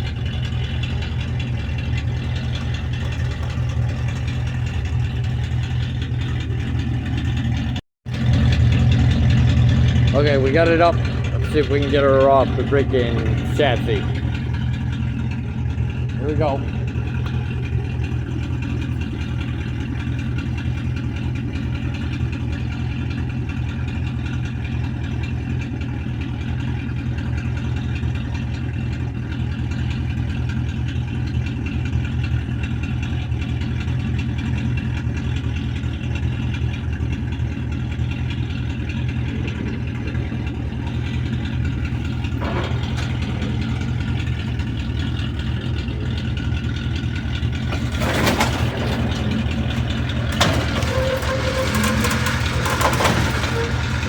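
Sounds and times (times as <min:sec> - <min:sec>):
vehicle engine idling: 0:00.0 - 0:54.0.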